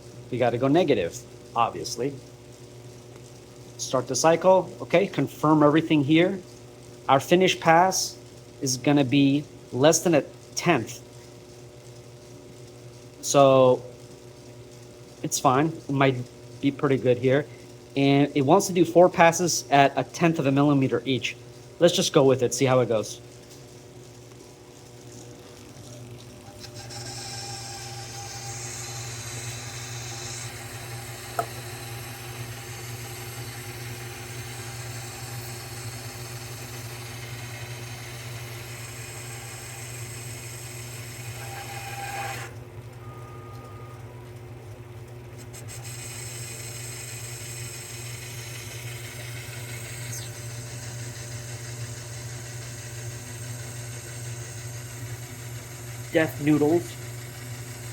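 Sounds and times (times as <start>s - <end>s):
metal lathe running: 26.4s - 42.7s, 45.4s - 57.9s
lathe cutting steel: 26.5s - 42.6s, 45.5s - 57.9s.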